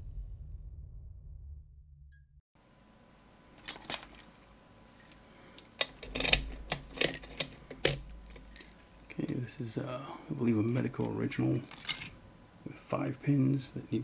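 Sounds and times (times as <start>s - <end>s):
lockpicking tools clinking: 3.0s - 12.7s
lock clicks: 3.4s - 9.4s, 10.7s - 12.3s.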